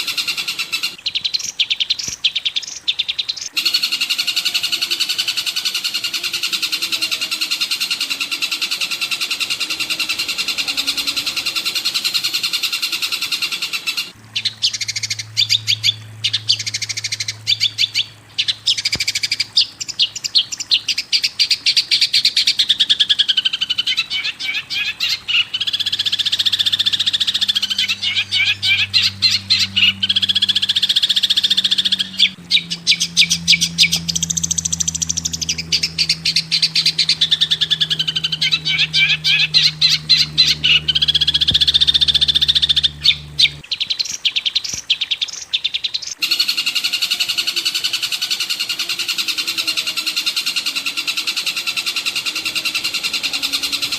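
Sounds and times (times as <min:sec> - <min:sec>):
recorded songbird calls: 0:00.0 - 0:53.9
low steady drone: 0:03.6 - 0:19.1, 0:25.7 - 0:43.6, 0:46.2 - 0:53.9
high chirps chattering: 0:25.7 - 0:43.6.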